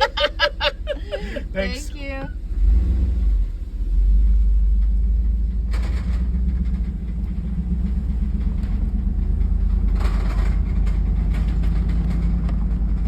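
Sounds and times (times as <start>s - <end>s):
vehicle engine and road rumble: 0.0s - 13.0s.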